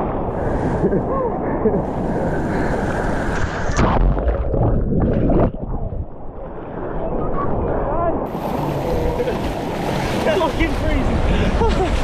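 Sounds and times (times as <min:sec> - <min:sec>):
ocean surf breaking: 0:06.3 - 0:12.0.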